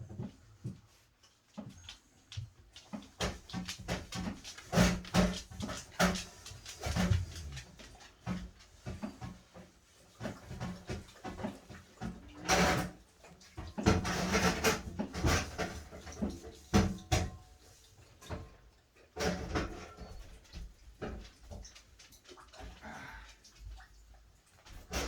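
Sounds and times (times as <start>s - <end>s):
rustling: 0.5s - 16.7s.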